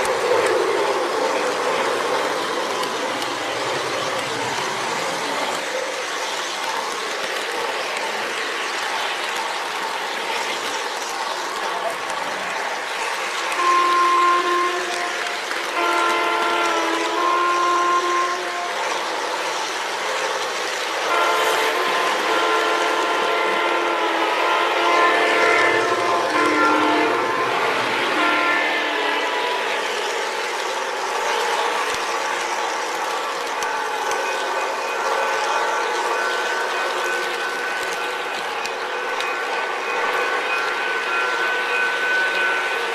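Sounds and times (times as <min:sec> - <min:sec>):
model train rolling on track: 0:00.0 - 0:42.9
model train horn chord: 0:13.5 - 0:18.9, 0:21.1 - 0:27.6, 0:28.2 - 0:29.0.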